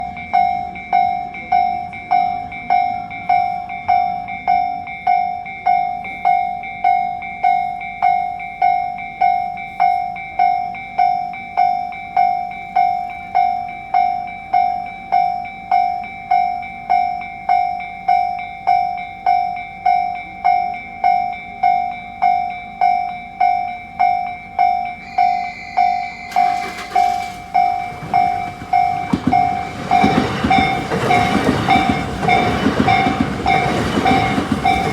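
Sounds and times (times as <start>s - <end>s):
level-crossing bell ringing: 0.0s - 34.9s
train rushing: 25.0s - 34.9s.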